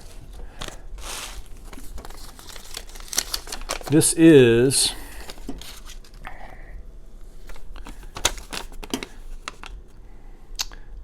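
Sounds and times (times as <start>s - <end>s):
paper and packaging rustling: 0.0s - 6.3s, 7.4s - 9.8s.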